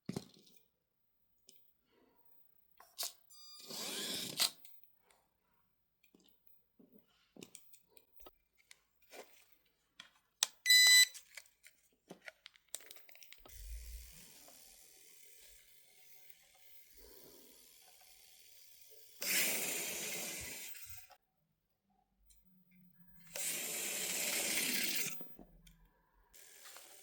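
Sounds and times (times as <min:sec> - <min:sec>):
high electronic beep: 0:10.7 - 0:11.1.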